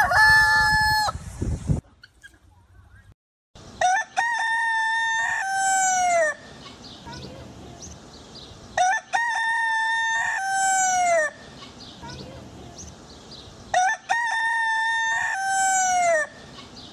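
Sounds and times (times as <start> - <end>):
rooster crowing: 0.0 - 1.2, 3.8 - 6.4, 8.8 - 11.4, 13.7 - 16.4.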